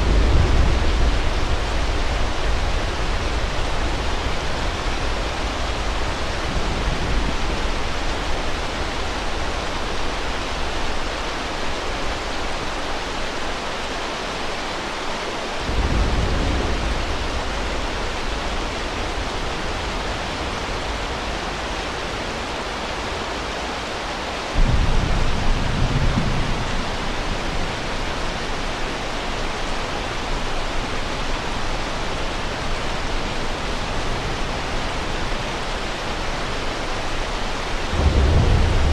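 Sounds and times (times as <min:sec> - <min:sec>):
low thunder rumbles: 0:00.0 - 0:11.1, 0:15.6 - 0:22.2, 0:24.6 - 0:35.9, 0:37.5 - 0:38.9
heavy rain hiss: 0:00.0 - 0:38.9.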